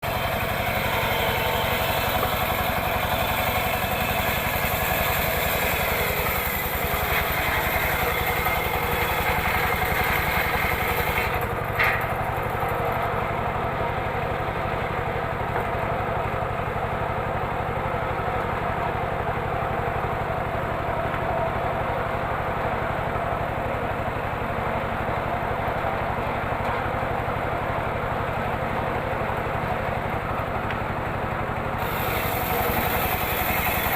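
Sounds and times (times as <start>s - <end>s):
circular saw cutting wood: 0.0s - 13.3s, 31.8s - 33.9s.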